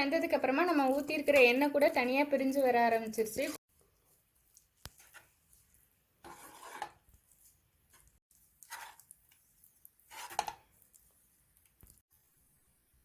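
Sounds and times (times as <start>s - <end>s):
utensil scraping thick paste: 4.4s - 11.1s.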